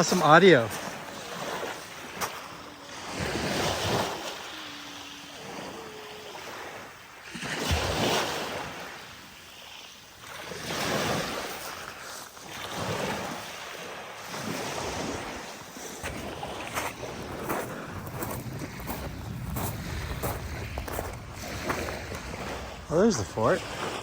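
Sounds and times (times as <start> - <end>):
wind on microphone: 0.0 - 9.2, 14.3 - 24.0
waves washing on shore: 0.0 - 24.0.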